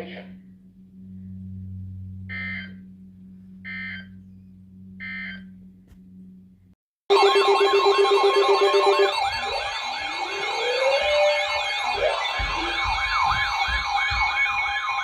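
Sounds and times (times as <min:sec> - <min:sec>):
steady low hum: 0:00.0 - 0:06.8
loud wavering siren tone: 0:00.0 - 0:15.0.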